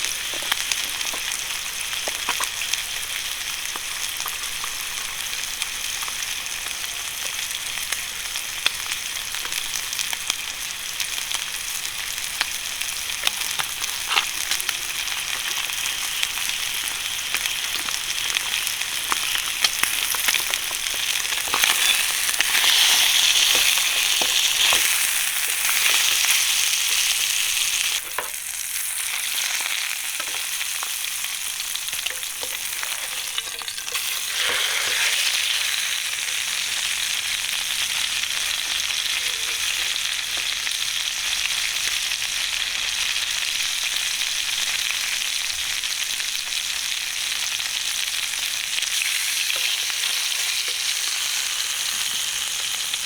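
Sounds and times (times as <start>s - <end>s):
crackles and pops: 0.0s - 10.4s, 12.2s - 28.4s
food sizzling in a pan: 0.0s - 53.0s.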